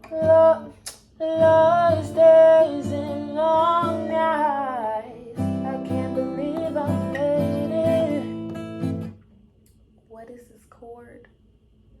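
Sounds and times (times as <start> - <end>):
guitar strumming chords: 1.4 - 9.2.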